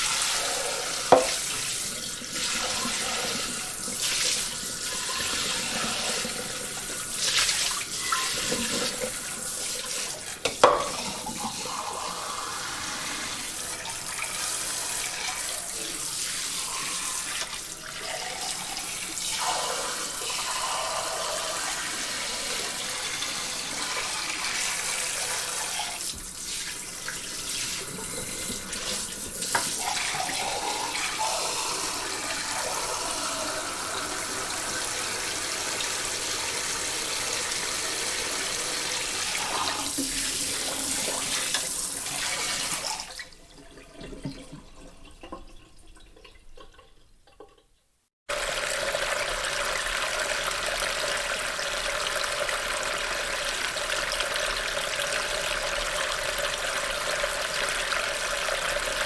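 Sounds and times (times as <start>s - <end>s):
water spraying onto dishes: 0.0s - 36.8s
dishes knocking: 1.1s - 1.4s, 10.4s - 11.0s.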